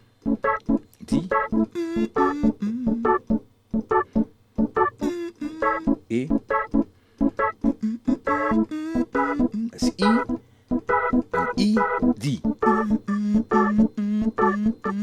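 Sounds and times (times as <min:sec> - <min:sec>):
organ chord stabs: 0:10.2 - 0:12.9.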